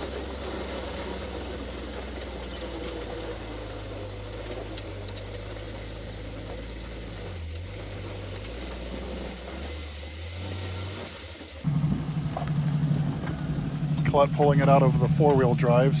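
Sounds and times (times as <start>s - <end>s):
engine running at low speed: 0.0s - 16.0s
faint light ticks: 11.7s - 14.0s.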